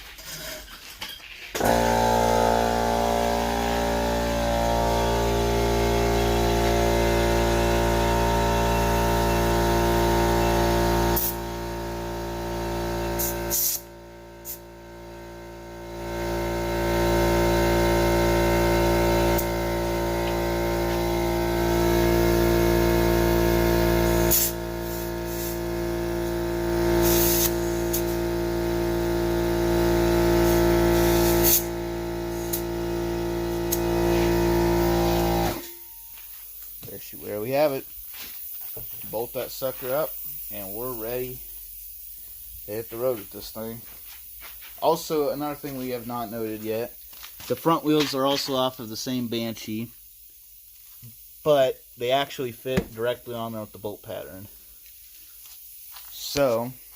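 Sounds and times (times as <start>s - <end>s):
motor humming: 1.6s - 35.9s.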